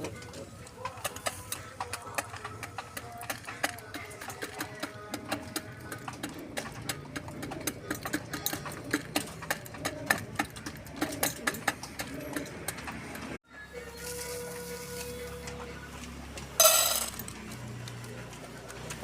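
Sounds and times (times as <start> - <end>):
pigeons pecking on hard surface: 0.0 - 13.4, 17.2 - 19.0.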